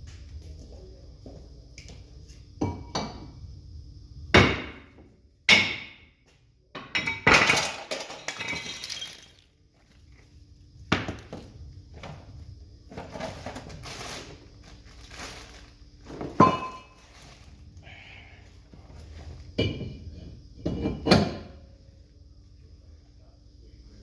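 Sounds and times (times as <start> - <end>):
metal tools clattering and scraping: 7.0 - 9.4, 16.2 - 17.2.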